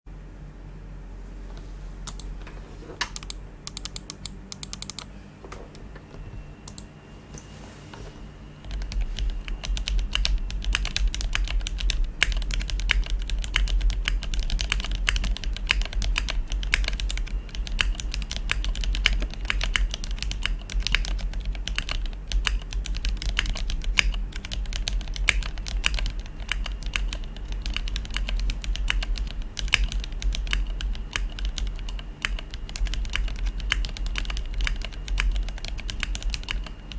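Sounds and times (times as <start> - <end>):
typing on mechanical keyboard: 8.6 - 36.9.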